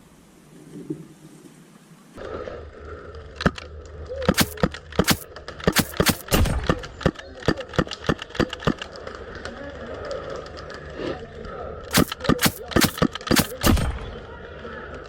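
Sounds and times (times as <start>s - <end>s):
airsoft gunfire: 4.3s - 6.4s, 11.9s - 14.0s.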